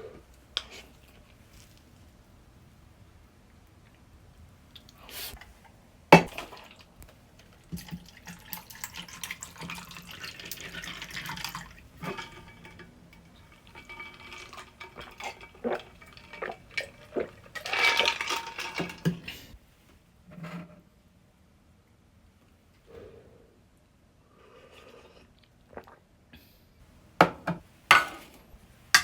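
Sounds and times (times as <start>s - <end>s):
liquid pouring: 7.4s - 19.6s
metal cookware clinking: 10.0s - 19.4s, 27.2s - 29.0s.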